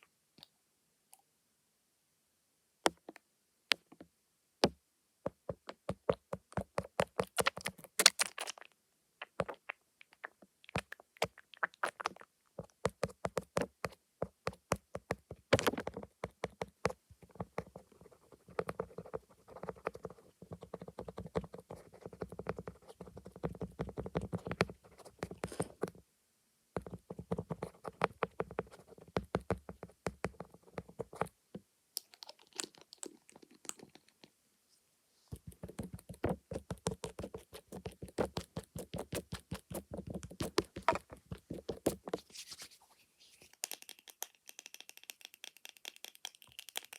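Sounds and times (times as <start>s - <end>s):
rubbing on camera lens: 35.3s - 43.7s.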